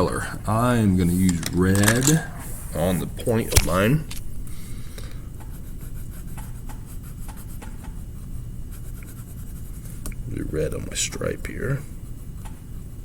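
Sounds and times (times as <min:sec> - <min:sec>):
drawing tool rubbing on paper: 0:05.5 - 0:10.0.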